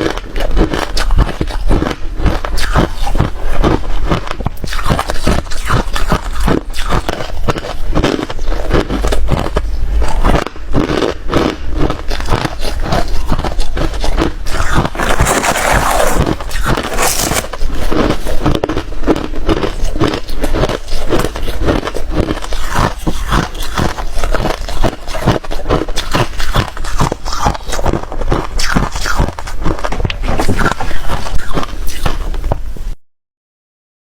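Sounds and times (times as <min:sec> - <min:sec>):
ice being chewed: 0:00.0 - 0:32.5.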